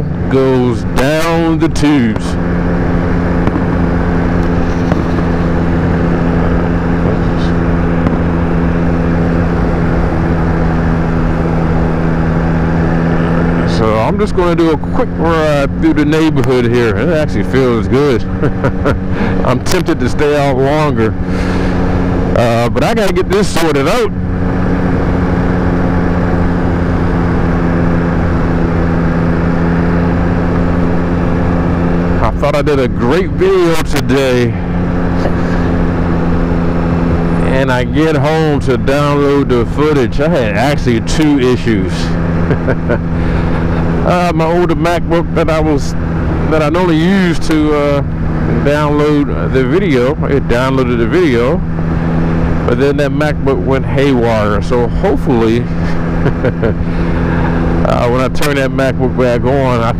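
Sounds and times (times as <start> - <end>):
motorcycle engine running: 0.0 - 59.9
road noise: 0.0 - 59.9
wind rush: 2.3 - 13.7.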